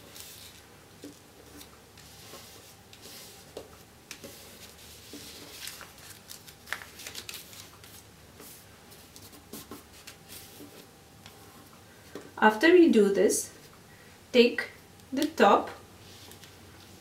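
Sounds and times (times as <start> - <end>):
paper rustling and creasing: 0.0 - 12.2, 16.0 - 17.0.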